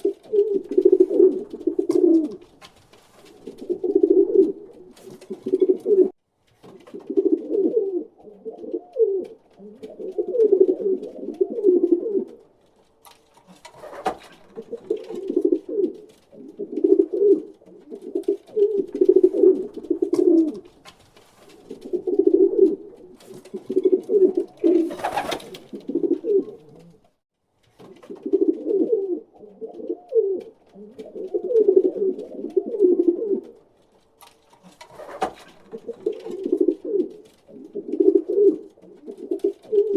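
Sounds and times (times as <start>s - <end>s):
pigeons cooing: 0.0s - 2.6s, 3.3s - 6.2s, 6.8s - 12.5s, 13.4s - 20.8s, 21.5s - 27.1s, 28.0s - 33.6s, 34.6s - 39.9s.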